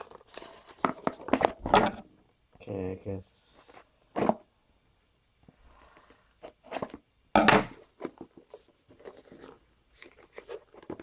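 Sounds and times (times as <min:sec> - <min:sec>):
packaging rustling: 0:07.8 - 0:11.0.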